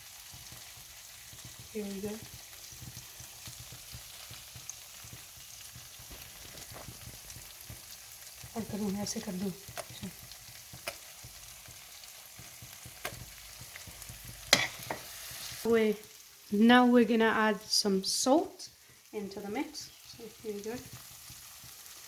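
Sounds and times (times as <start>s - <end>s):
sauce sizzling in a frying pan: 0.0s - 22.0s
spoon clicking against pan: 9.6s - 15.1s.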